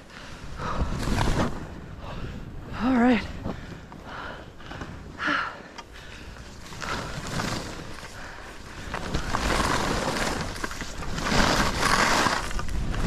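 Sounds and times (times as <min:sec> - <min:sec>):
wind rushing over microphone: 0:00.0 - 0:05.2, 0:06.4 - 0:13.0
skis sliding through snow: 0:06.4 - 0:13.0.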